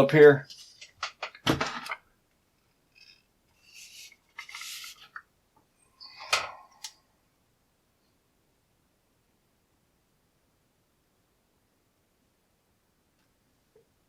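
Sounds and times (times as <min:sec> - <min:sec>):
small objects scraping on workbench: 0:02.9 - 0:05.2.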